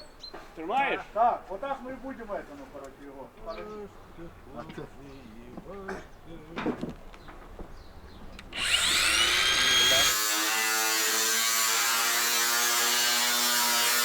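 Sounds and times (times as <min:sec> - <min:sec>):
power tool motor whining: 0:08.5 - 0:14.0.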